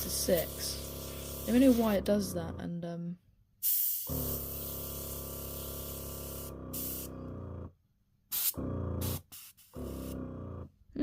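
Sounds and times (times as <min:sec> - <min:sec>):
air compressor humming: 0:00.0 - 0:02.1, 0:03.6 - 0:07.7, 0:08.3 - 0:10.7
air hissing from airbrush: 0:00.1 - 0:01.9, 0:03.6 - 0:07.1, 0:08.3 - 0:10.2.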